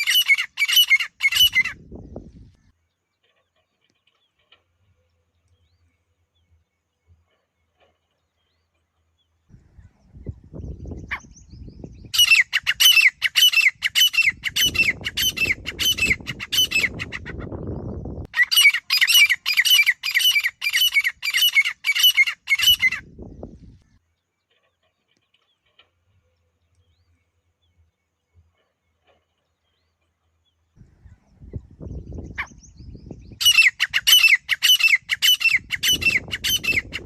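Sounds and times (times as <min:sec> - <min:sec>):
bird harsh calls: 0:00.0 - 0:01.8, 0:10.6 - 0:24.0, 0:32.1 - 0:37.0.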